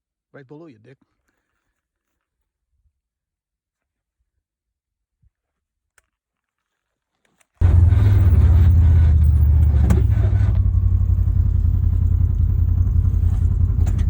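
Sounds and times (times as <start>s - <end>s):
vehicle engine running: 7.6s - 14.0s.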